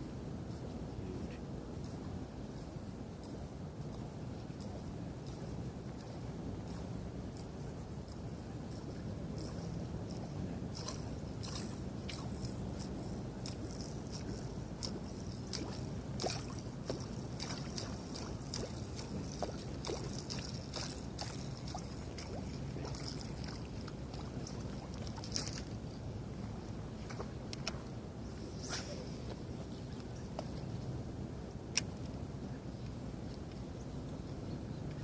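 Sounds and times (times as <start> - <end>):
low steady rumble: 0.0 - 35.0
water lapping and sloshing: 10.2 - 25.8, 26.9 - 27.8
small irregular clicks: 27.0 - 27.8, 31.7 - 32.2.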